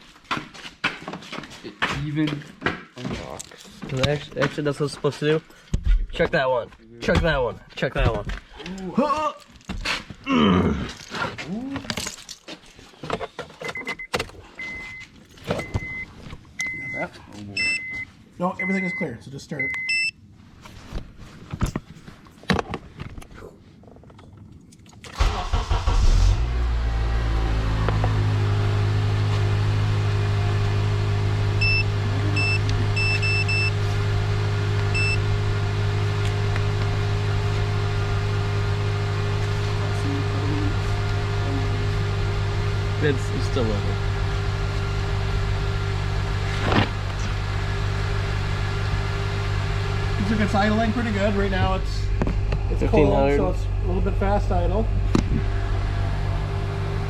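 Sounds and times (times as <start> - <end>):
car engine starting: 25.0 - 57.0.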